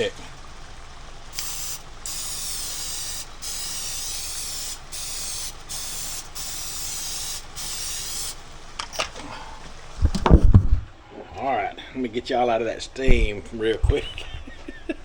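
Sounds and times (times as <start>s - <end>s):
cooking spray hissing: 1.3s - 8.7s.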